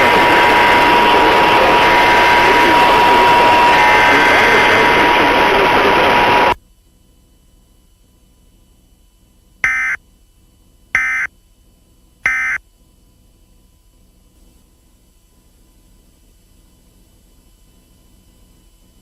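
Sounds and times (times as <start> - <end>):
loud static with steady tone: 0.0 - 6.6
data bursts: 9.6 - 10.0, 11.0 - 11.3, 12.3 - 12.6.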